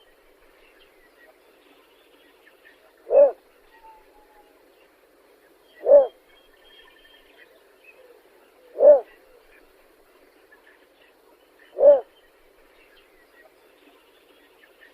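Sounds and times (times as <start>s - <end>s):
bittern hooting calls: 3.0s - 4.4s, 5.8s - 6.2s, 8.0s - 9.5s, 11.6s - 12.1s.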